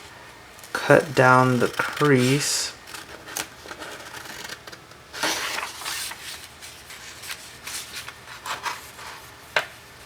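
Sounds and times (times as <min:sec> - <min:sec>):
paper rustling: 0:00.8 - 0:09.7
scissors cutting paper: 0:01.3 - 0:06.1.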